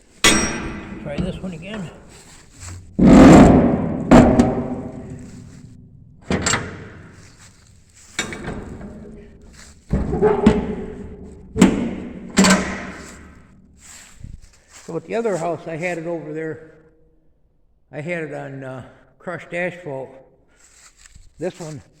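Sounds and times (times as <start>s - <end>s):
steel container door banging shut: 0.2s - 2.1s, 3.0s - 5.5s, 6.2s - 7.2s, 8.2s - 9.1s, 9.9s - 13.4s.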